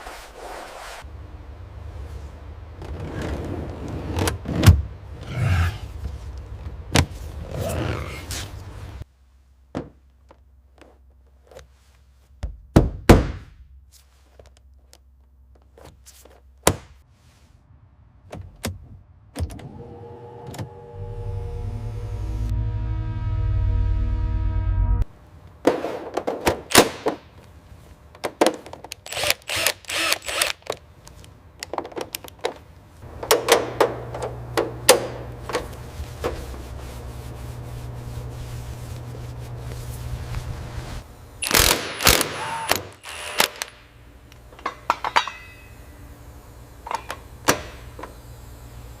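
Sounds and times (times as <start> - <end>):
low machine hum: 19.6 - 25.6, 32.7 - 49.0
tool knocks and clanks: 33.2 - 36.4, 44.6 - 45.6.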